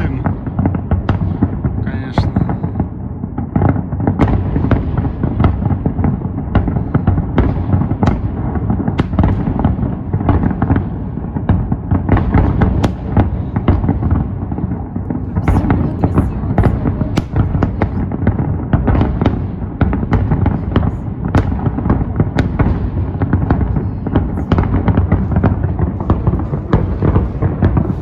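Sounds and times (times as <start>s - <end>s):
fireworks booming: 0.0s - 28.0s
fireworks cracks and bangs: 0.0s - 28.0s.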